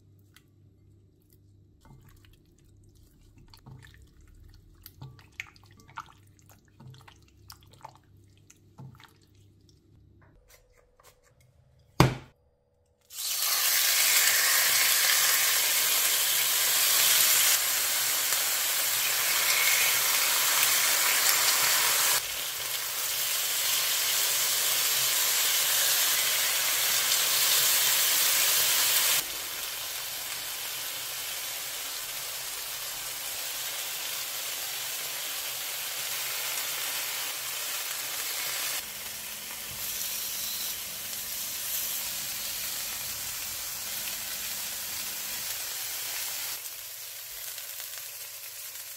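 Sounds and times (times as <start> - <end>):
kitchen knocks: 12.0 - 12.3
chicken sizzling: 13.1 - 48.9.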